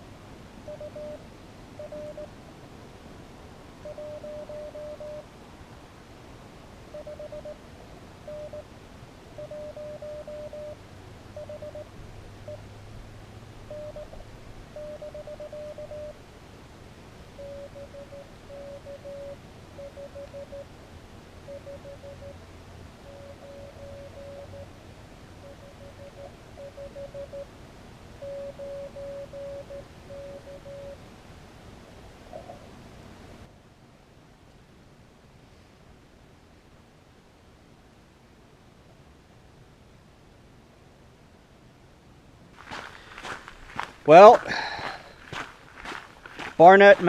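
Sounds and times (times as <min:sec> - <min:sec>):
morse code beeps: 0:00.7 - 0:01.2, 0:01.8 - 0:02.3, 0:03.8 - 0:05.2, 0:06.9 - 0:07.6, 0:08.3 - 0:08.7, 0:09.4 - 0:10.8, 0:11.4 - 0:11.9, 0:13.7 - 0:14.2, 0:14.8 - 0:16.2, 0:17.4 - 0:20.7, 0:21.4 - 0:22.4, 0:23.0 - 0:24.7, 0:25.4 - 0:27.5, 0:28.2 - 0:31.0.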